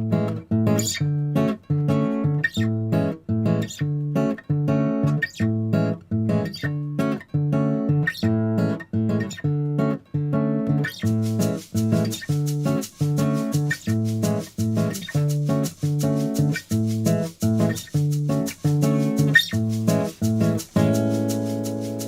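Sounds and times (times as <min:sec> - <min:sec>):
strummed acoustic guitar: 0:00.0 - 0:22.0.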